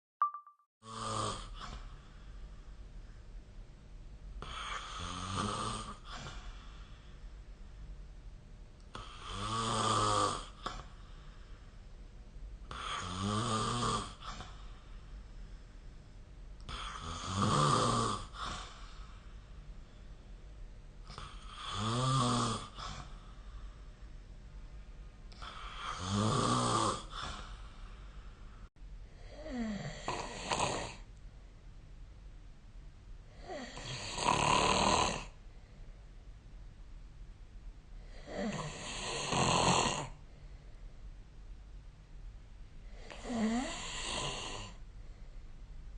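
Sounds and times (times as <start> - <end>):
person snoring: 0.8 - 1.9, 4.4 - 7.0, 8.9 - 11.0, 12.7 - 14.7, 16.6 - 19.2, 21.1 - 23.4, 25.3 - 27.8, 29.2 - 31.1, 33.3 - 35.4, 38.0 - 40.2, 42.9 - 44.8
quiet breathing: 1.4 - 3.4, 4.3 - 7.8, 10.4 - 13.2, 14.0 - 17.4, 18.1 - 24.4, 25.2 - 31.2, 35.2 - 36.2, 40.0 - 41.2, 42.7 - 45.8.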